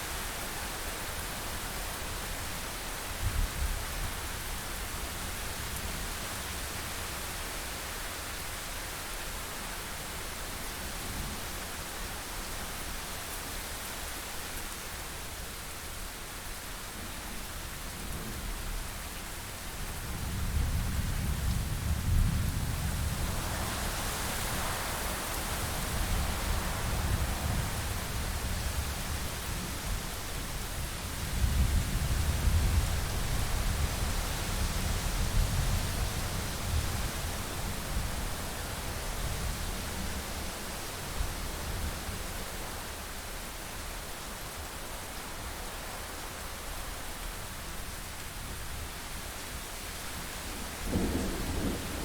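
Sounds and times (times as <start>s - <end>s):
rain hiss: 0.0s - 52.0s
thunder rumbling: 50.8s - 52.0s.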